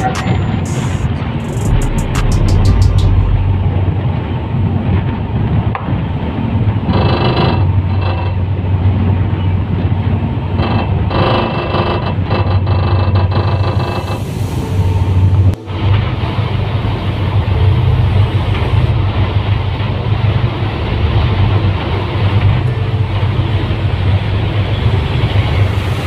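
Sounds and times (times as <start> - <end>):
boat engines droning: 3.3 - 26.0.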